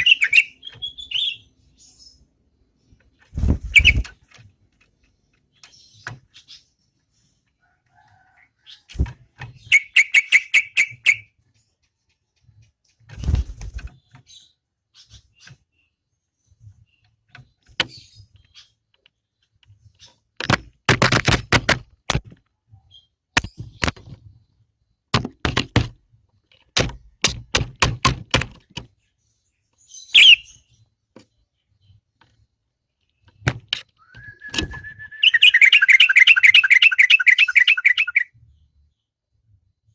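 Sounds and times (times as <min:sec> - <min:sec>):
bird whistled note and trilling call: 0:00.0 - 0:01.5, 0:09.6 - 0:11.3, 0:30.0 - 0:30.6, 0:34.0 - 0:38.3
bird chirp: 0:00.0 - 0:20.4, 0:22.5 - 0:25.1, 0:28.8 - 0:39.9
sharp knocks and clatters: 0:16.7 - 0:22.6, 0:23.3 - 0:24.4, 0:25.1 - 0:29.0, 0:33.2 - 0:34.8.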